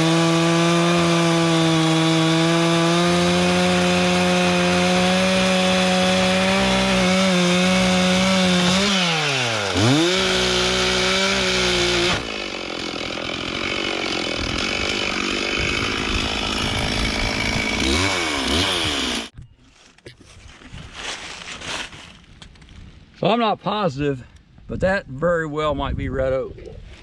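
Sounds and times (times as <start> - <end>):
chainsaw cutting wood: 0.0 - 19.4.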